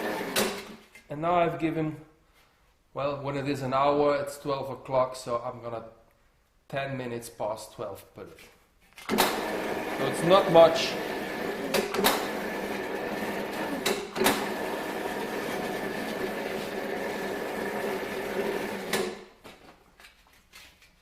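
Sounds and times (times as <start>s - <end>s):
metal swaging machine running: 9.1s - 19.1s.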